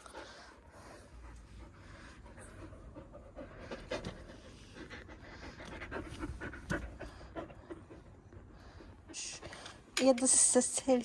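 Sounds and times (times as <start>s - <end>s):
dog panting: 0.0s - 9.8s.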